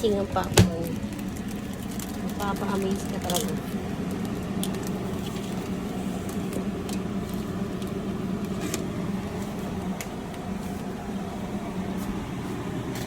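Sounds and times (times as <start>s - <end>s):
microwave oven humming: 0.0s - 13.0s.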